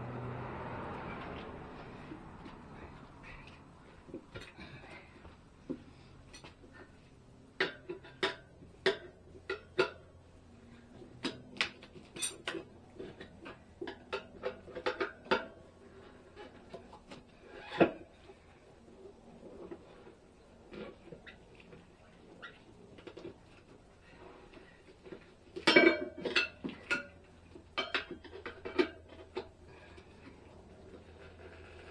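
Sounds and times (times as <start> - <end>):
tire spoons clinking on wheel rim: 11.0 - 18.1, 20.7 - 31.9.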